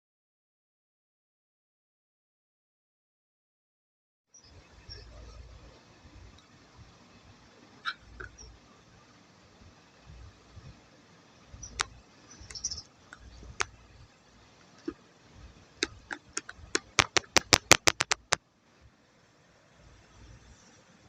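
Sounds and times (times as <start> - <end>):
sharp clicks or taps: 15.8 - 18.4.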